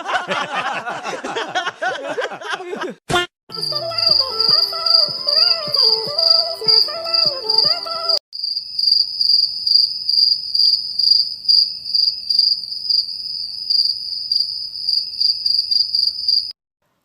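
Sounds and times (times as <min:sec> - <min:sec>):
music: 0:03.5 - 0:08.2
crickets chirping: 0:03.6 - 0:16.6.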